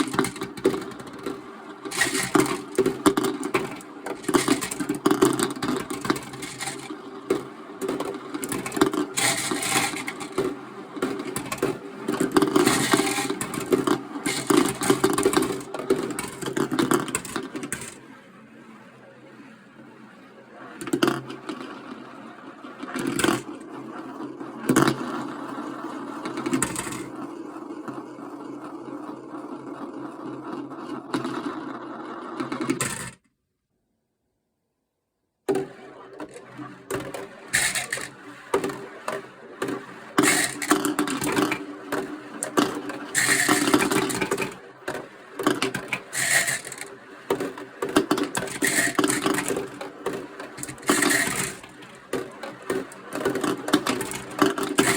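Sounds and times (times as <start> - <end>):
marbles clicking on track: 0.0 - 18.0, 35.5 - 54.9
marbles rolling on plastic track: 0.0 - 18.2, 20.6 - 33.2, 35.5 - 54.9.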